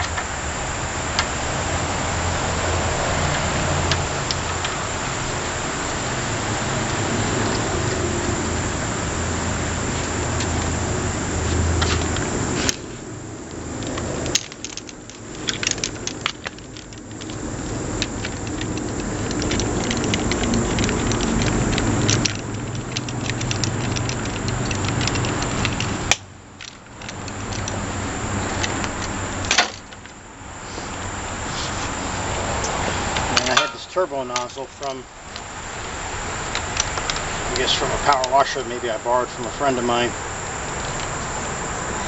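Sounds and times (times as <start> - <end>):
sharp clicks: 13.5 - 27.8
small metal parts clinking: 13.8 - 30.2, 32.6 - 35.5, 36.4 - 39.9.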